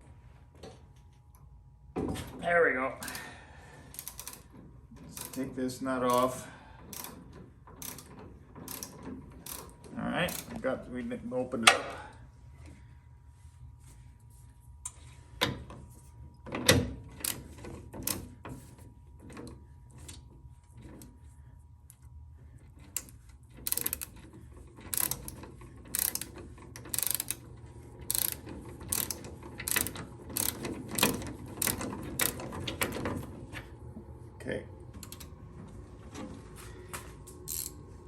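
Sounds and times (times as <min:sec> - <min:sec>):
ratchet wrench clicking: 0:03.9 - 0:04.5, 0:05.1 - 0:05.5, 0:06.1 - 0:07.2, 0:07.8 - 0:08.1, 0:08.7 - 0:10.5, 0:22.9 - 0:24.2, 0:24.8 - 0:27.4, 0:28.1 - 0:32.4, 0:37.5 - 0:37.8.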